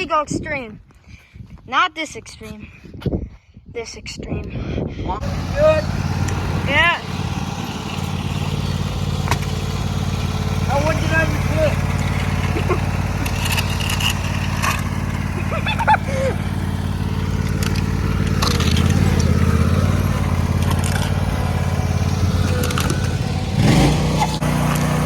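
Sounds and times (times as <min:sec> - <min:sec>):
engine running: 0:05.2 - 0:25.0
sharp knocks and clatters: 0:07.9 - 0:09.8.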